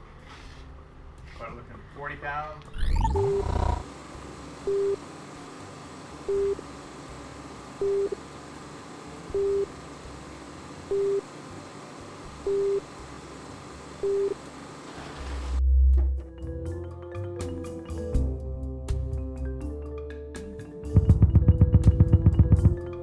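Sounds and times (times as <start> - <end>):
low electronic beeps: 2.7 - 3.9.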